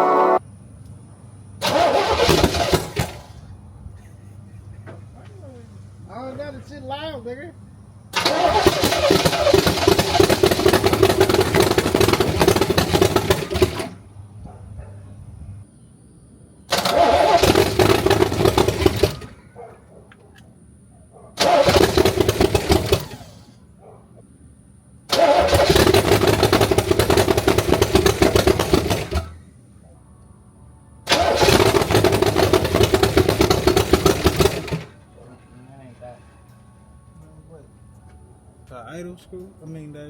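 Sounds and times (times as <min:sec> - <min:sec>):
car engine starting and cutting out: 0:00.0 - 0:00.4, 0:01.6 - 0:03.6, 0:08.1 - 0:14.1, 0:16.7 - 0:19.5, 0:21.4 - 0:23.6, 0:25.1 - 0:29.5, 0:31.0 - 0:36.4.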